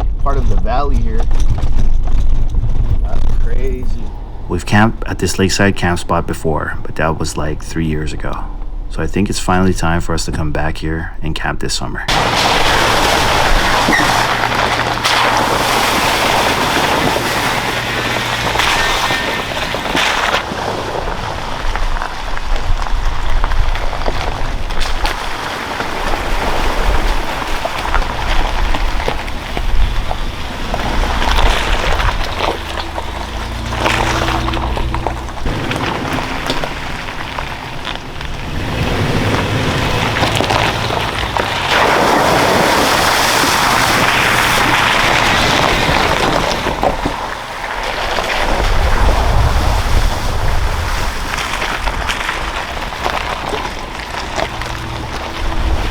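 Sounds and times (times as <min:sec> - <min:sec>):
wind buffeting microphone: 0:00.0 - 0:10.0, 0:12.1 - 0:55.9
steady low tones: 0:00.0 - 0:12.4, 0:29.6 - 0:41.6
low rumble: 0:00.0 - 0:25.2, 0:26.5 - 0:55.9
tyres crunching on gravel: 0:00.0 - 0:55.9
vehicle driving on dirt road: 0:00.0 - 0:55.9.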